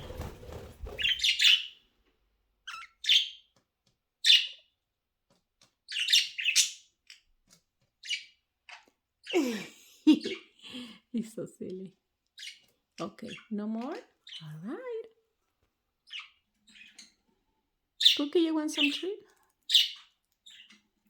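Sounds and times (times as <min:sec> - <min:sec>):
budgerigars chirping: 0:00.8 - 0:01.8, 0:02.6 - 0:03.5, 0:04.2 - 0:04.7, 0:05.9 - 0:07.3, 0:08.0 - 0:09.5, 0:12.3 - 0:13.6, 0:16.0 - 0:17.2, 0:18.0 - 0:19.1, 0:19.7 - 0:20.8.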